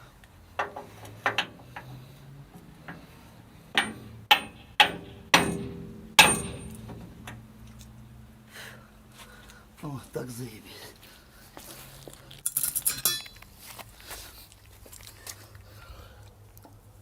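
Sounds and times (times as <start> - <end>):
hammer striking steel: 3.7 - 7.1, 12.9 - 13.3.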